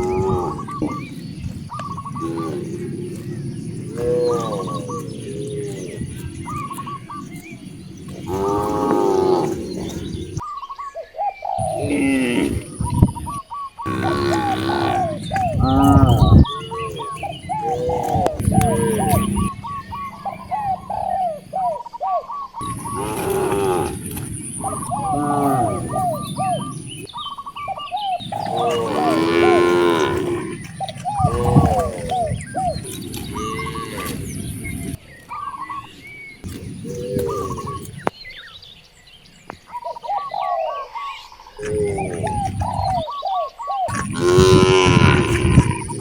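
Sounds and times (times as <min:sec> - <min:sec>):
cows mooing: 0:00.0 - 0:01.2, 0:02.1 - 0:06.8, 0:08.1 - 0:10.4, 0:13.9 - 0:21.5, 0:22.6 - 0:27.1, 0:28.2 - 0:35.0, 0:43.9 - 0:46.0
small birds chirping: 0:00.0 - 0:46.0.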